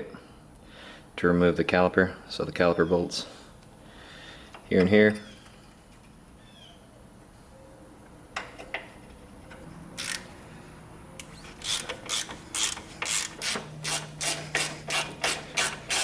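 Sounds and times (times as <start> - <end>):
hand ratchet clicking: 10.0 - 10.3, 11.2 - 16.0
quick ratchet strokes: 10.0 - 10.3, 11.4 - 16.0.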